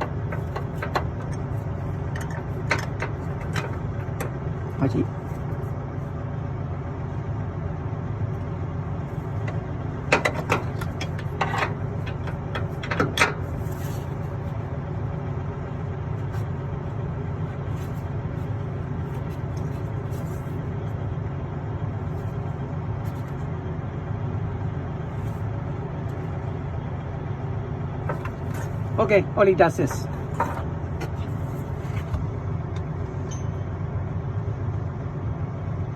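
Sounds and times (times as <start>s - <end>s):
sharp metallic clicks and knocks: 0.0s - 4.4s, 9.4s - 13.5s
low engine hum: 0.0s - 35.9s.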